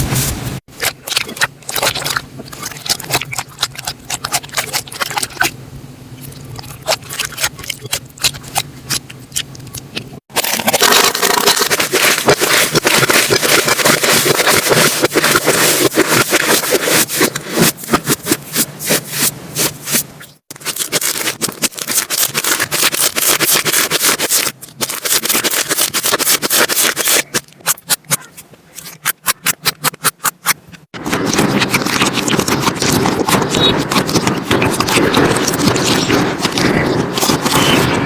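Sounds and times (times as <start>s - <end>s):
slime crackling and popping: 6.5s - 18.7s, 20.5s - 28.1s, 29.2s - 38.0s.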